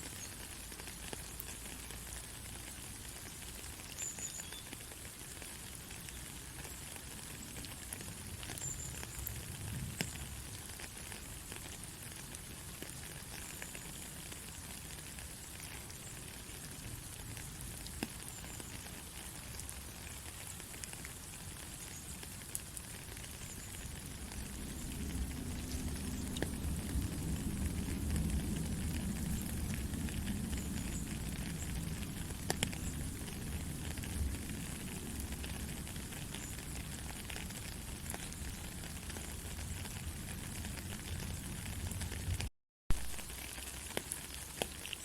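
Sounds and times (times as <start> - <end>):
light rain: 0.0 - 45.0.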